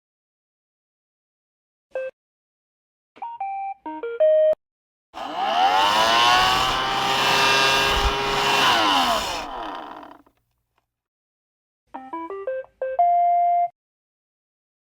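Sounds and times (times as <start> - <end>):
robot vacuum motors running: 5.2 - 10.2.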